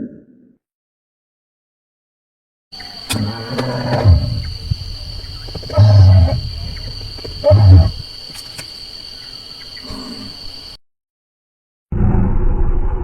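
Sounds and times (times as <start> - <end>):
deep low booming bird calls: 2.8 - 8.6.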